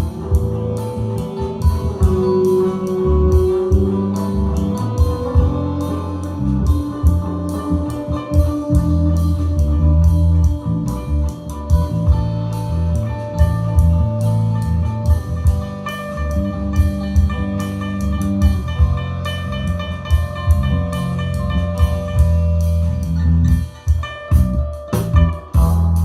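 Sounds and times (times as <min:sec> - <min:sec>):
band music through speaker: 0:00.0 - 0:26.0.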